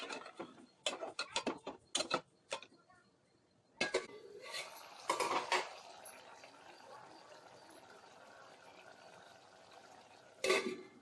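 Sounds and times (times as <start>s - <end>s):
utensils and dishes clattering: 0.0s - 2.7s, 3.8s - 6.5s, 10.4s - 11.0s.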